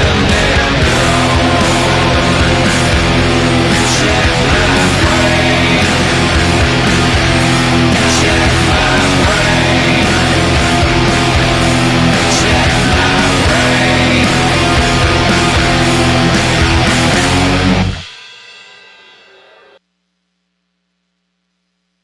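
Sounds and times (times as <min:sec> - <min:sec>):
electric guitar through amp: 0:00.0 - 0:18.1
recorded rock song: 0:00.0 - 0:19.8.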